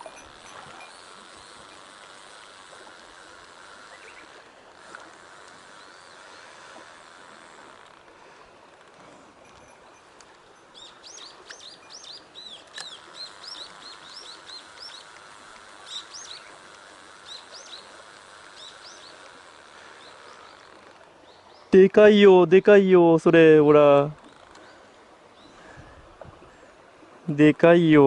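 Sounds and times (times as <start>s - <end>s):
songbird chirping: 0.0s - 1.8s, 9.4s - 22.8s
mountain stream rushing: 0.0s - 24.1s.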